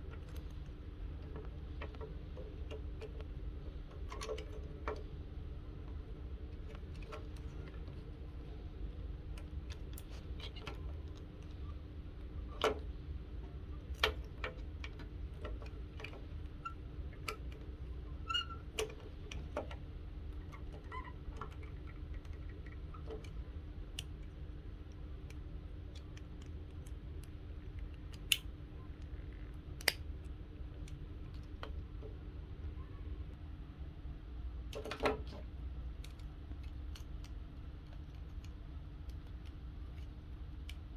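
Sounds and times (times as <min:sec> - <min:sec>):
steady low hum: 0:00.0 - 0:40.9
plastic model parts clicking: 0:21.4 - 0:31.8, 0:35.9 - 0:40.9.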